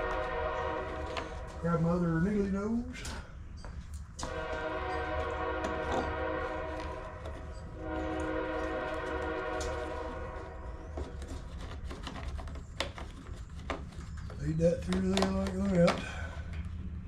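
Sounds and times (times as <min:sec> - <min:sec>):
train horn blasts: 0:00.0 - 0:02.7, 0:04.2 - 0:11.2.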